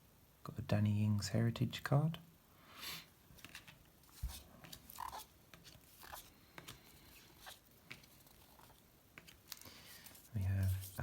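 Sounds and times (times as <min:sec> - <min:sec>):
trading cards clicking and rustling: 0:03.4 - 0:11.0.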